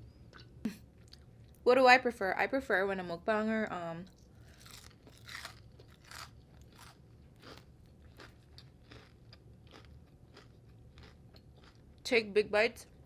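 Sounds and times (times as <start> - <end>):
chewing food: 4.1 - 12.0.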